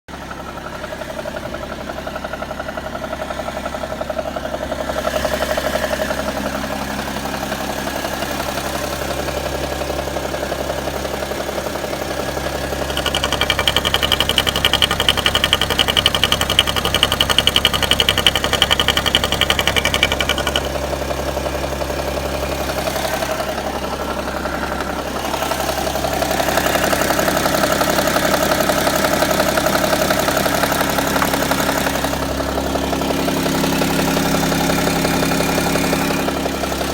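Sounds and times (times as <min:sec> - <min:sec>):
car engine idling: 0:00.1 - 0:36.9
high rapid buzzing: 0:12.8 - 0:20.8.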